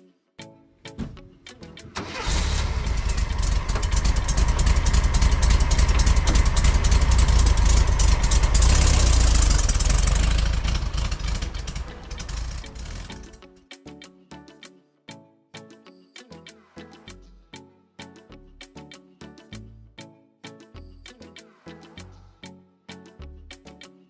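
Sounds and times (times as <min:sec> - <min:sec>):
air-cooled car engine running: 0:02.0 - 0:13.4.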